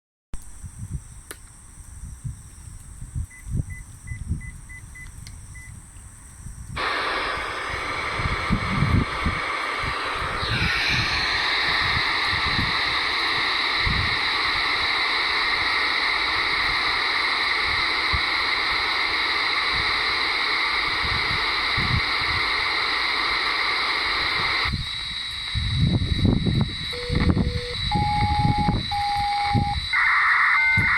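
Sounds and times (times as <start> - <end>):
radio hiss: 6.8 - 30.9
short electronic beeps: 27.0 - 30.9.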